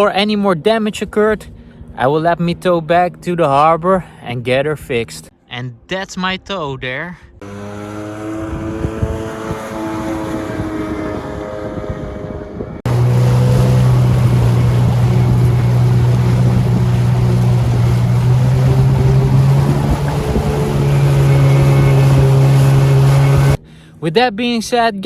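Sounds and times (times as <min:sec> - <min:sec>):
jet ski engine drone: 0:07.4 - 0:23.7.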